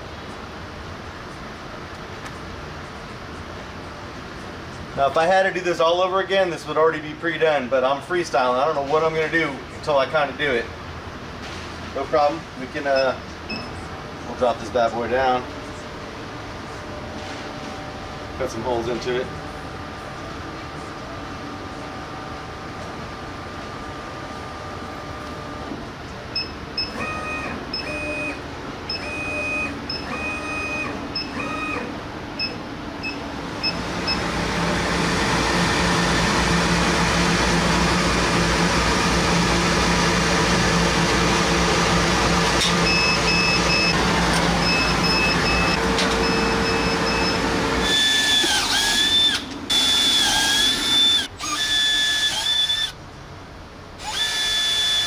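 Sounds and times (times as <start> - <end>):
laser cutter motors whining: 26.8 - 31.9, 33.6 - 53.0, 54.0 - 55.0
power drill in short bursts: 26.8 - 31.9, 33.6 - 53.0, 54.0 - 55.0.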